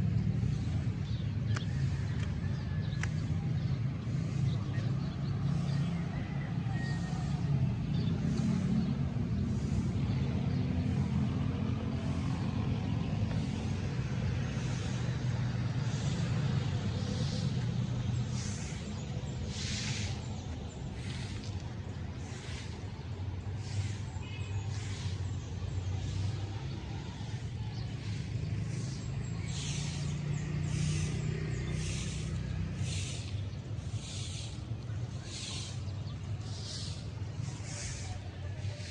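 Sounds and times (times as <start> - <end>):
motorcycle engine cruising: 6.9 - 21.6, 24.8 - 38.6.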